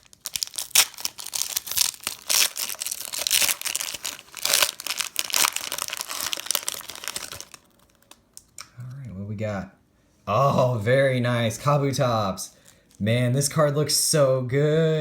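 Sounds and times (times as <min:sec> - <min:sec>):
wrapper crinkling and tearing: 0:00.0 - 0:08.6.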